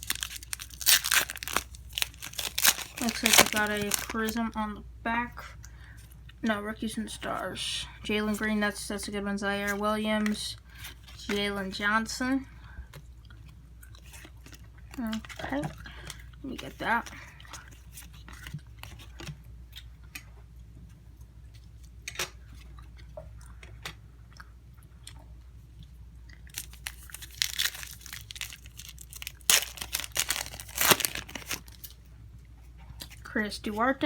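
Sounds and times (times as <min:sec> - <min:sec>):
cards rustling and clicking: 0:00.0 - 0:04.4, 0:26.6 - 0:31.9
foil wrapper tearing and crinkling: 0:00.0 - 0:04.4, 0:26.5 - 0:32.0.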